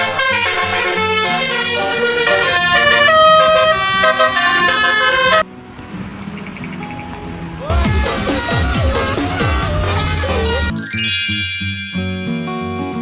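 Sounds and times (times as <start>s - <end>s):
bus horn playing a tune: 0.0s - 5.5s, 7.4s - 10.7s.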